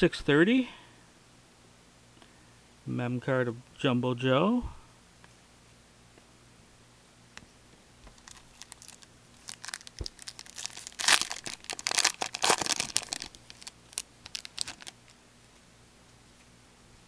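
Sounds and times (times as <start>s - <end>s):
wrapper crinkling and tearing: 8.1s - 15.2s.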